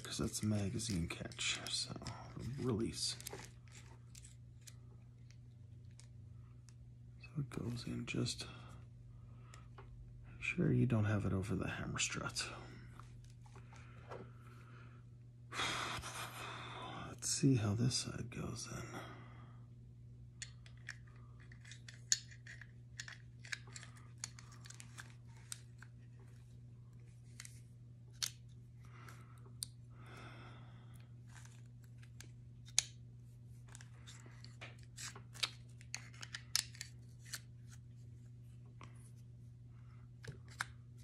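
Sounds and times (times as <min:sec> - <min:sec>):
pistol parts clicking and scraping: 0:00.0 - 0:06.1, 0:20.4 - 0:26.0, 0:33.7 - 0:37.8
steady low hum: 0:00.0 - 0:41.0.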